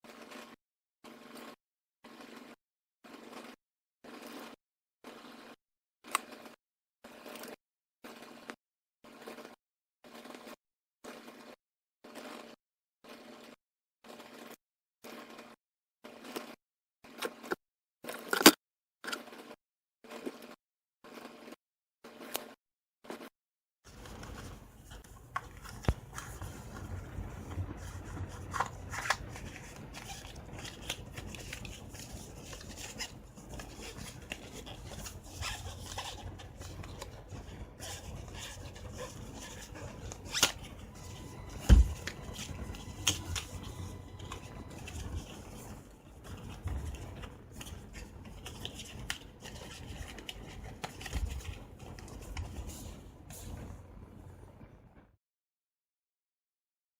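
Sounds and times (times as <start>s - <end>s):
cards rustling and scraping: 23.9s - 53.8s.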